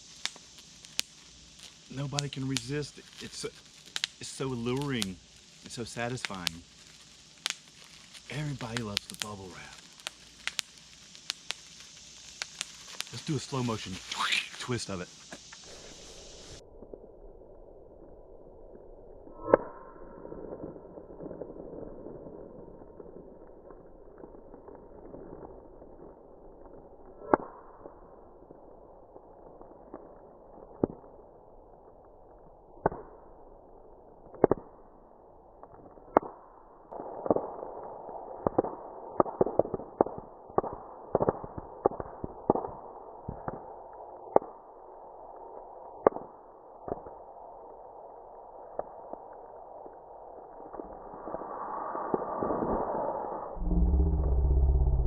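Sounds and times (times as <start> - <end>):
bubble wrap popping: 6.2 - 14.6.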